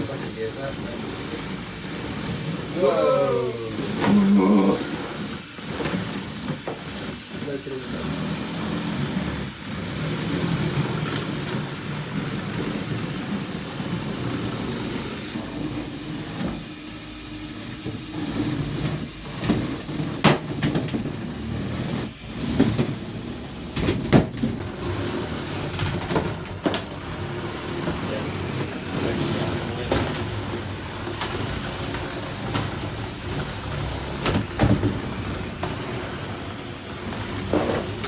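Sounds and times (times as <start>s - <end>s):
small electric motors whirring: 0.0s - 38.0s
plastic robots colliding: 15.4s - 24.7s.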